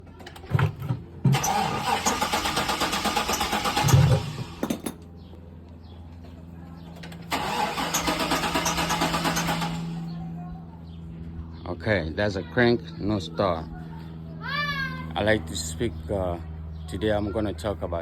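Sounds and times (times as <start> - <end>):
starter cranking truck engine: 0.2 - 4.8, 7.0 - 10.1.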